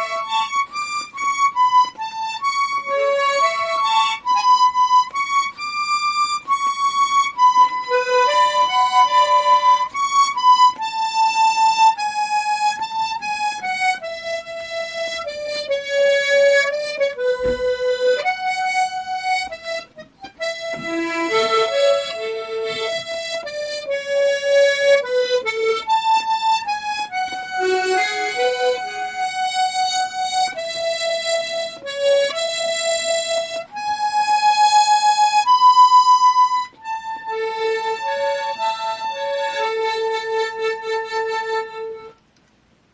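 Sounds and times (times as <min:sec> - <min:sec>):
harmonica playing slow melody: 0:00.0 - 0:42.2
single low thump: 0:17.4 - 0:17.8.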